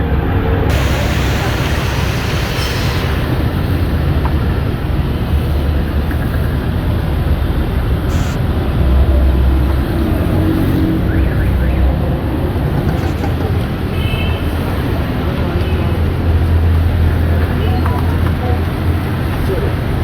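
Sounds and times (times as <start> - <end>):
noisy hiss: 0.7 - 4.2, 8.0 - 8.8.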